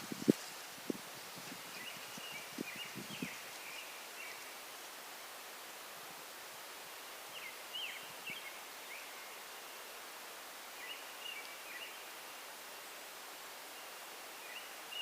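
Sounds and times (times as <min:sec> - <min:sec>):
steady outdoor hiss: 0:00.0 - 0:15.0.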